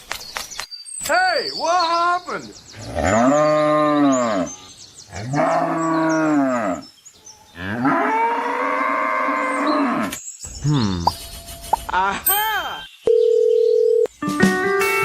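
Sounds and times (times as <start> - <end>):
cow mooing: 2.8 - 4.6, 5.2 - 6.8, 7.6 - 10.1.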